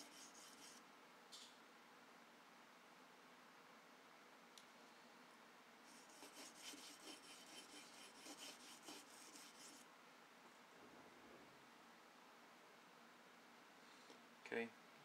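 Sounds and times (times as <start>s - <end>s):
knife blade rubbing on sharpening stone: 0.0s - 0.8s.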